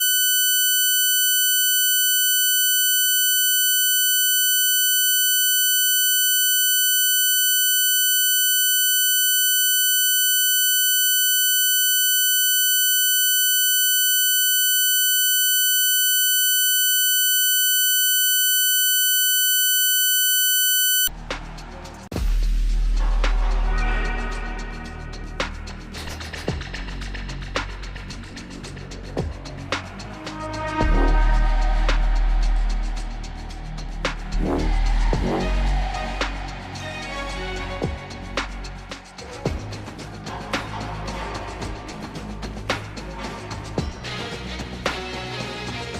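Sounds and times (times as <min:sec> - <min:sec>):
high-pitched electronic tone: 0:00.0 - 0:21.1
music: 0:21.1 - 0:45.9.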